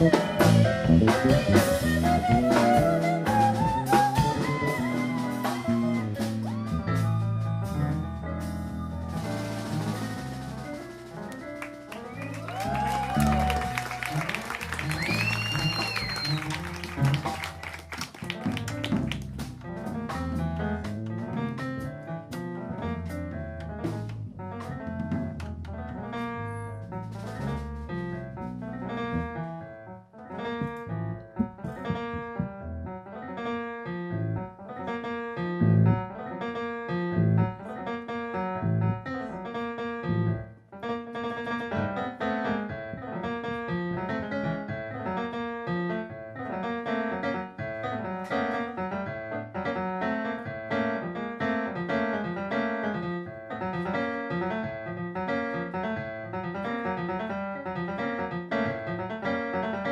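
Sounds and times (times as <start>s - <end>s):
piano playing quick runs: 0.0s - 59.9s.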